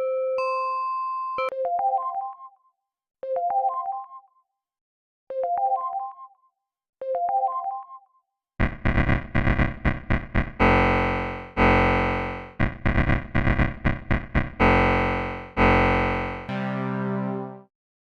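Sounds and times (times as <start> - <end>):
harsh distorted pulsing noise: 8.6 - 16.5.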